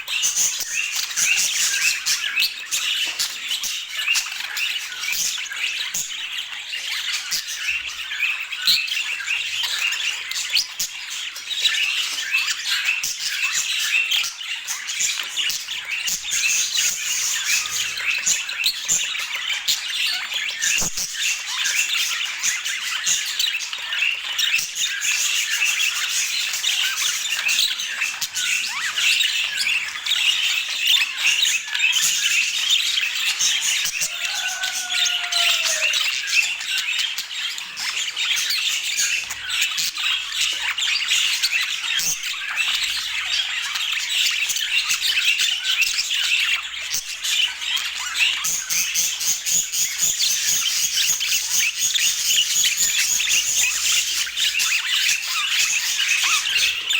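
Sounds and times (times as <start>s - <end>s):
budgerigars chattering and squawking: 0.0s - 56.9s
lower falling bird call: 34.1s - 36.0s.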